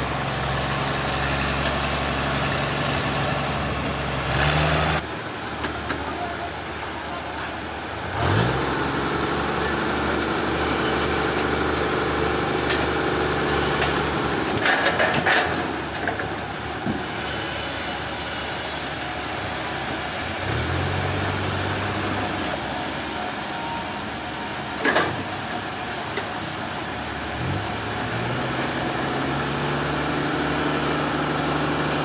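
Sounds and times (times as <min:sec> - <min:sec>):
heavy machinery engine: 0:00.0 - 0:32.0
knocks and clanks: 0:13.8 - 0:17.0.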